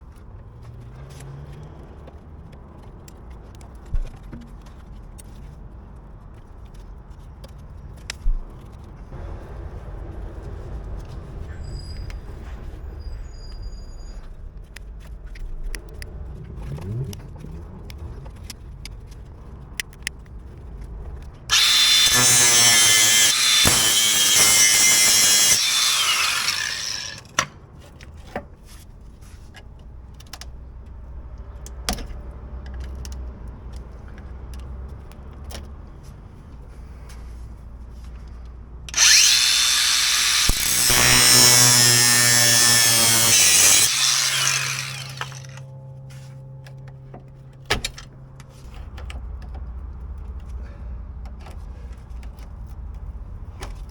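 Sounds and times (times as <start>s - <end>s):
handheld power tool running: 21.5s - 27.3s, 38.9s - 45.6s
clicks and knocks of tool work: 38.3s - 45.7s.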